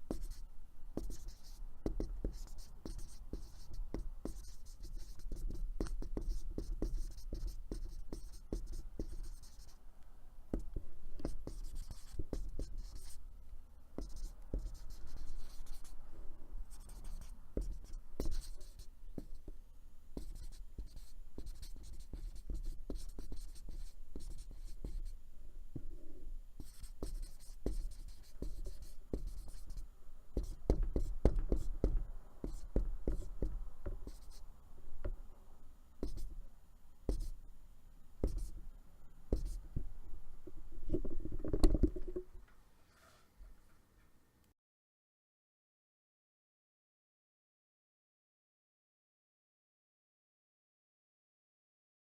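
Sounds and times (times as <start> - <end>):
marker tapping whiteboard: 1.0 - 9.6, 10.6 - 13.1, 14.0 - 15.8, 20.2 - 25.0, 26.6 - 29.8, 30.4 - 34.4, 36.0 - 36.3, 37.1 - 37.3, 38.2 - 38.5, 39.4 - 39.9.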